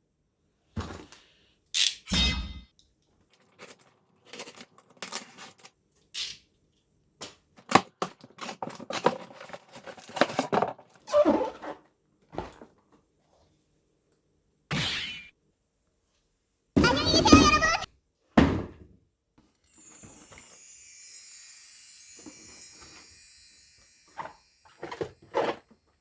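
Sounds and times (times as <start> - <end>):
paper packaging rustling and tearing: 3.4 - 5.7, 7.6 - 11.6.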